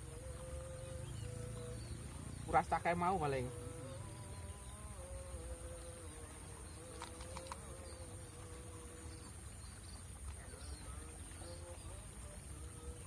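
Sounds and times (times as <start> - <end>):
faint steady hum: 0.0 - 13.0
high-pitched insect trill: 0.0 - 13.0
faint clicks: 6.8 - 8.0.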